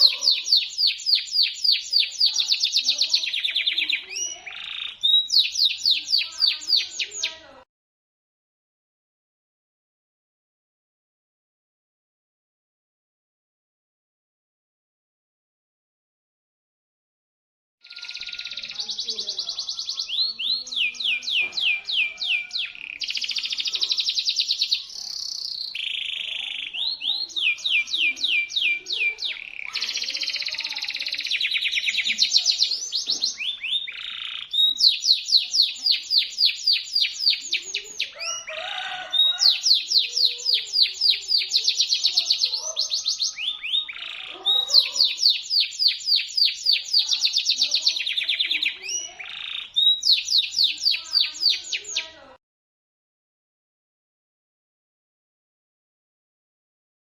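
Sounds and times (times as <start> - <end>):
canary singing: 0.0 - 7.6, 17.8 - 52.4.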